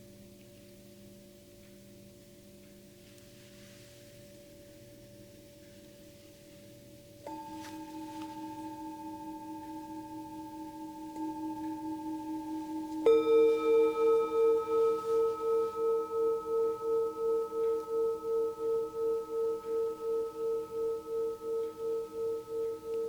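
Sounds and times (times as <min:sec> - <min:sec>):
singing bowls ringing: 0:00.2 - 0:23.0
higher-pitched bowl struck: 0:07.2 - 0:23.0.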